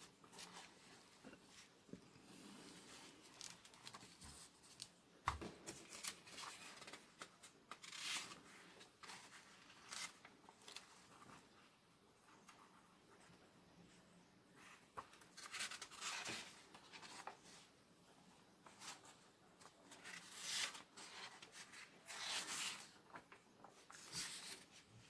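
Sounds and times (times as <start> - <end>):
packaging handling clicks and rustles: 3.2 - 8.0.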